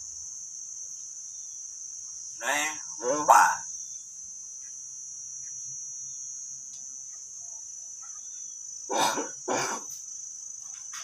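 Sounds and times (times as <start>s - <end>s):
cricket trill: 0.0s - 11.0s
bird imitating cough: 8.9s - 10.0s.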